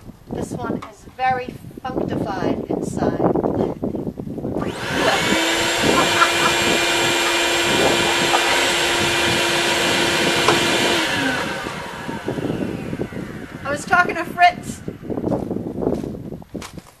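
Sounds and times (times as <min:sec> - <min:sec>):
vacuum cleaner whining: 0:04.6 - 0:15.5.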